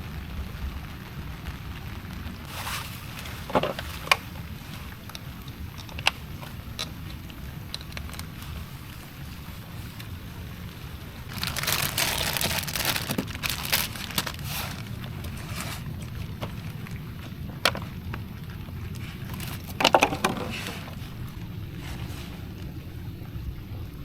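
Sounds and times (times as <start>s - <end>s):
low rumble of wind: 0.0s - 24.0s
water splashing against a canoe: 11.3s - 22.8s.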